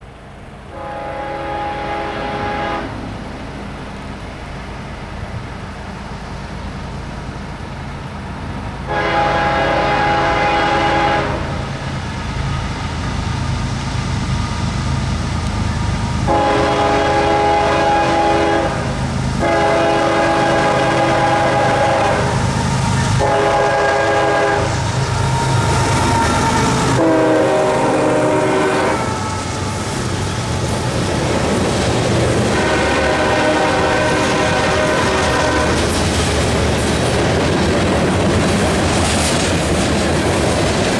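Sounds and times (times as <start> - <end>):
locomotive engine rumble: 0.0 - 40.9
locomotive horn blasts: 0.7 - 3.2, 8.8 - 11.8, 16.2 - 29.3, 32.5 - 36.0.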